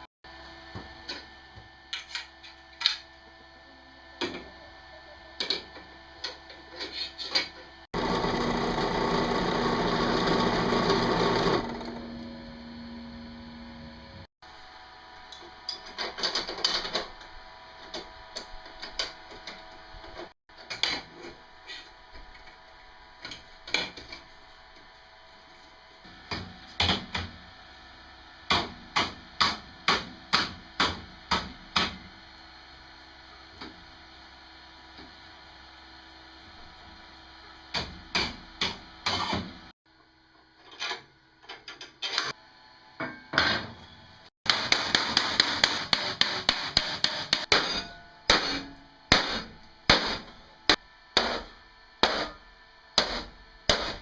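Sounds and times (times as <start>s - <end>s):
small power tool running: 7.9s - 12.8s.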